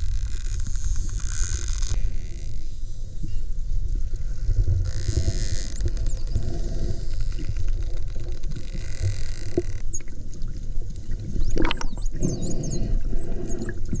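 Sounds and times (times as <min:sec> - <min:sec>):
low underwater rumble: 0:00.0 - 0:14.0
dolphin whistles underwater: 0:11.4 - 0:14.0.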